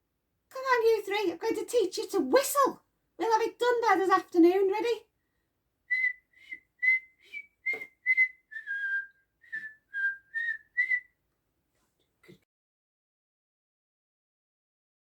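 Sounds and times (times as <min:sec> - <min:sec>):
person whistling a tune: 0:05.9 - 0:11.1.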